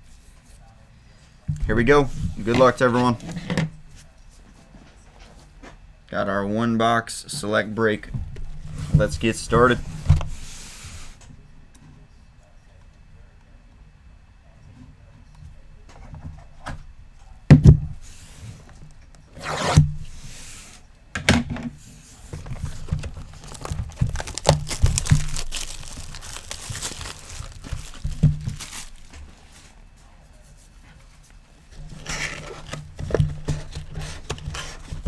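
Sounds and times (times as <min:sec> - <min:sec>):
cardboard box thunks: 0:22.3 - 0:29.4, 0:31.8 - 0:35.0
plastic wrap tearing and crinkling: 0:22.3 - 0:29.6.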